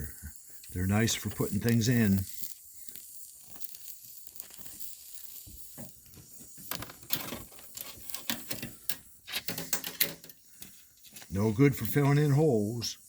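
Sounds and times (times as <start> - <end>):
welding arc pops: 0.0 - 10.3
welding arc crackling and hissing: 0.0 - 13.0.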